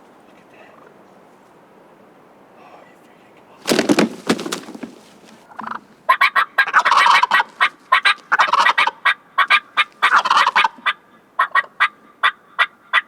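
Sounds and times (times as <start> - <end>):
turkeys gobbling: 3.7 - 13.0.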